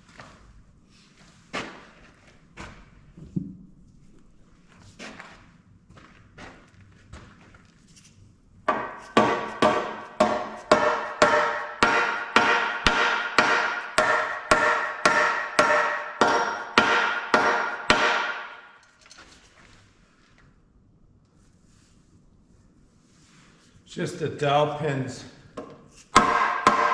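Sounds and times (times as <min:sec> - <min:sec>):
hammer blows on metal: 0:08.7 - 0:18.7.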